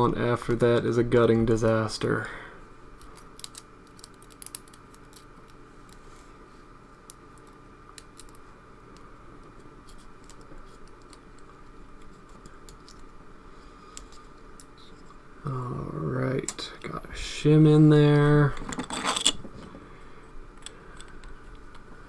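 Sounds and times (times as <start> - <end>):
lock metallic clicks and scratches: 18.6 - 19.5.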